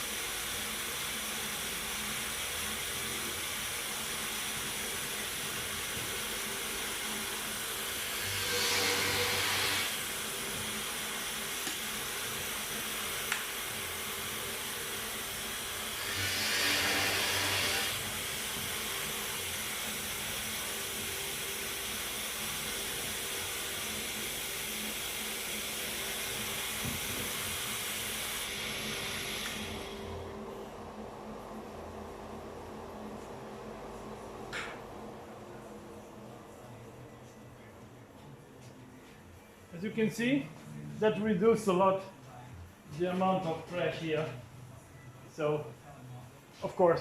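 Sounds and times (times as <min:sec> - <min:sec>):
vacuum dust collector hissing: 0:00.0 - 0:30.3.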